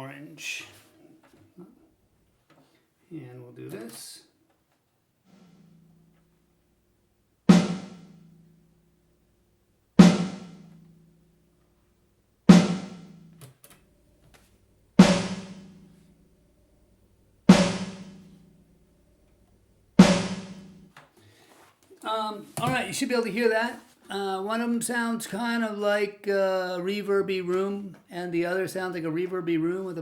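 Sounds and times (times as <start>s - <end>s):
snare drum hits with reverb: 7.5s - 8.1s, 10.0s - 10.6s, 12.5s - 13.0s, 15.0s - 15.8s, 17.5s - 18.3s, 20.0s - 20.7s.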